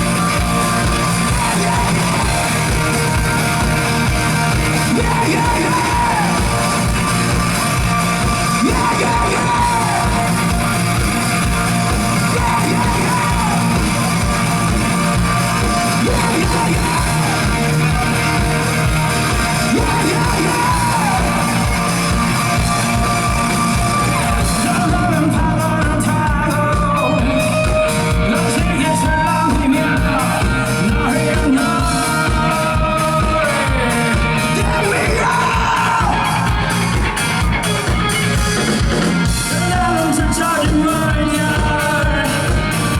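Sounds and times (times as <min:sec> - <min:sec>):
man singing and yelling: 0:00.0 - 0:38.6, 0:39.3 - 0:42.9
drums: 0:00.0 - 0:42.9
live rock band playing: 0:00.0 - 0:42.9.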